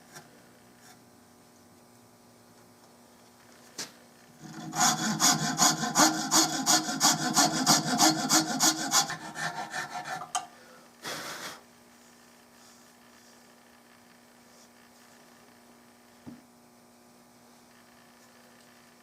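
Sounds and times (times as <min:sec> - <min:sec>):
hand tool cutting wood: 0:04.4 - 0:10.4.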